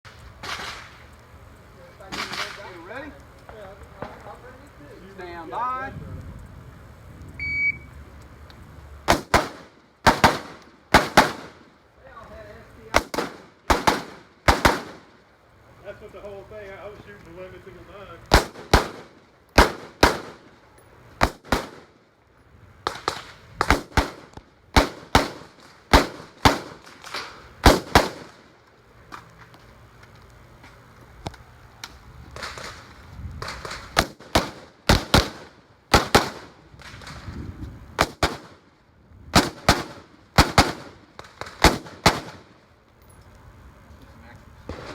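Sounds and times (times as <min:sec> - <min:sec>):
rifle shots: 0:09.1 - 0:11.7, 0:12.9 - 0:15.1, 0:18.3 - 0:20.5, 0:21.2 - 0:21.9, 0:22.9 - 0:28.4, 0:33.4 - 0:37.1, 0:38.0 - 0:38.6, 0:39.3 - 0:42.5.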